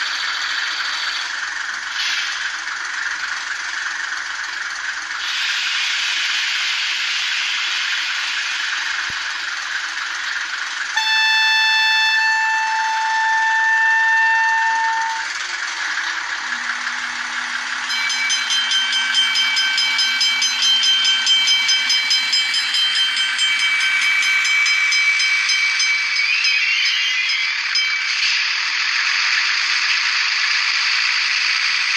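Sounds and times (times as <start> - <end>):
diesel engine pulsing beat: 8.4 - 31.9
locomotive horn through small speaker: 11.0 - 15.4.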